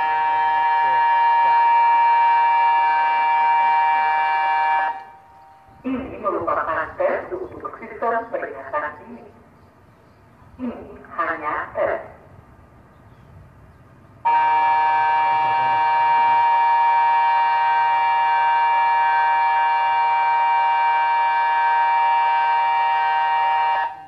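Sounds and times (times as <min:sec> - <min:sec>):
warning siren steady chord: 0:00.0 - 0:05.8, 0:14.2 - 0:24.0.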